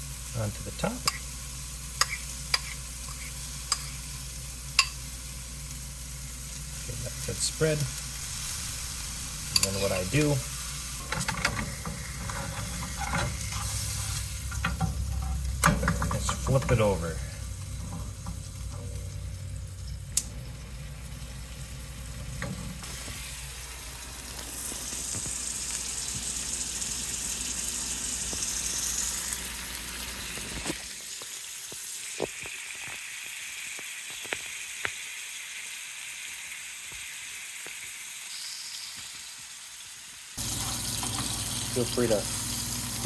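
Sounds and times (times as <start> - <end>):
patty sizzling in a pan: 0.0 - 43.0
sharp pops of frying: 2.0 - 4.0, 4.7 - 5.1.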